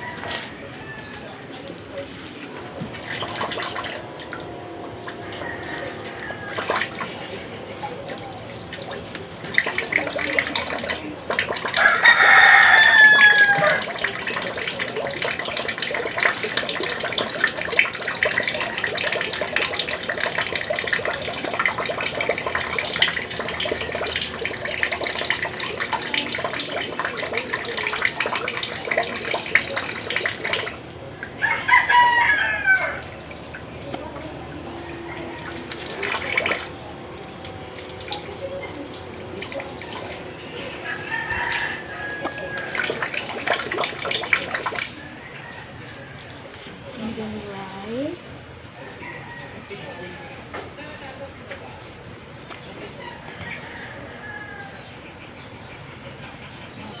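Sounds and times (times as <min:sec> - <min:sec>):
rooster crowing: 0:00.0 - 0:01.6, 0:04.9 - 0:07.2, 0:11.6 - 0:14.4, 0:31.3 - 0:33.4, 0:34.6 - 0:37.0, 0:39.6 - 0:46.6, 0:48.8 - 0:50.7, 0:52.9 - 0:54.9
tap water running: 0:02.6 - 0:45.1.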